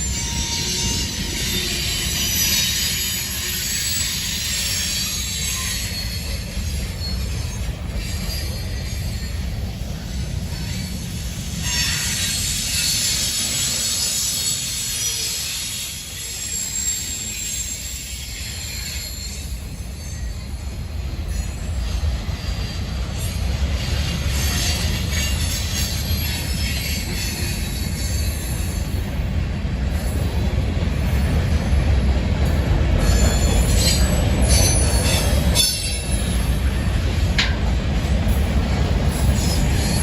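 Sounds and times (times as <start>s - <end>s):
freight train rumbling: 0.0s - 40.0s
wheels squealing on rails: 0.0s - 40.0s.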